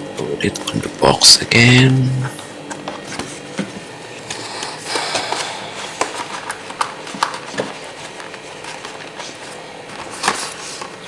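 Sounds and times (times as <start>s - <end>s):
packaging rustling: 4.3s - 11.0s.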